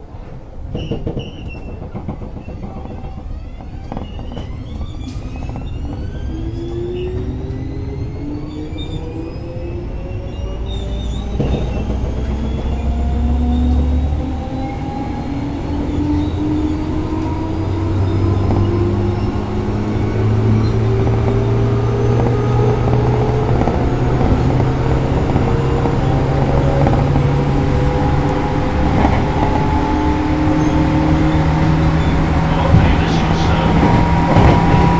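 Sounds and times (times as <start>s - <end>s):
electric train motor whine: 2.2s - 34.9s
deep hum: 11.2s - 34.9s.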